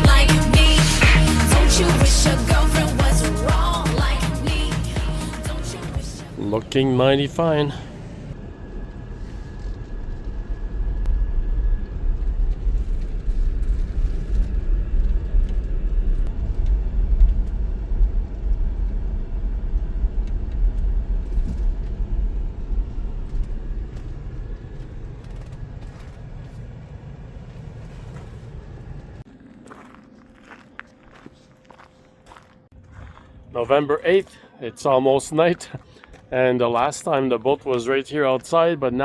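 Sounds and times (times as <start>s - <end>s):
car road and engine rumble: 2.1s - 29.6s.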